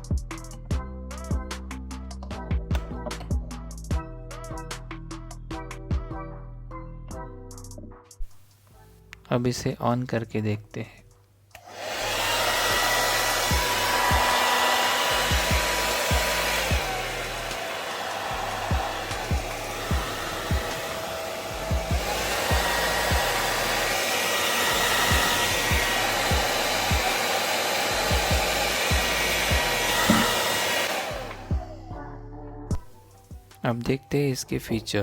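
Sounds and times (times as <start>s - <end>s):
hair dryer blowing: 11.6s - 31.7s.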